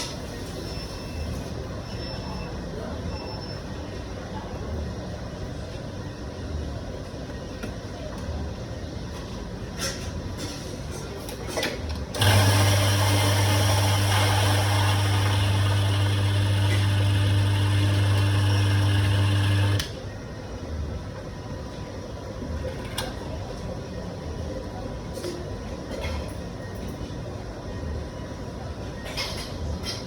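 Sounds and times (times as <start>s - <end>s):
electric coffee grinder grinding: 12.2s - 19.9s.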